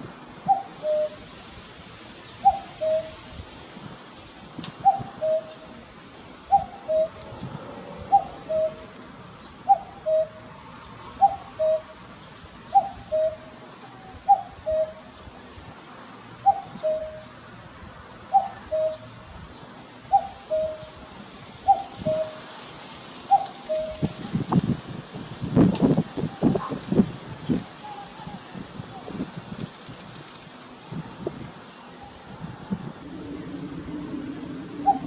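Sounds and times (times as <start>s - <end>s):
cuckoo calling: 0.4s - 1.2s, 2.4s - 3.3s, 4.7s - 5.8s, 6.5s - 10.5s, 11.2s - 12.1s, 12.7s - 15.2s, 16.4s - 17.3s, 18.3s - 19.2s, 20.1s - 21.0s, 21.6s - 22.5s, 23.3s - 24.5s, 33.0s - 35.0s.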